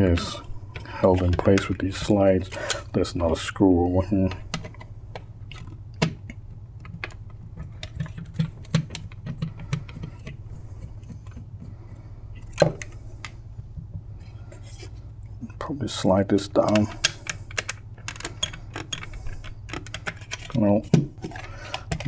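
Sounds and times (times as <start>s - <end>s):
steady low hum: 0.0s - 22.0s
screwdriver and plastic clicks: 16.6s - 22.0s.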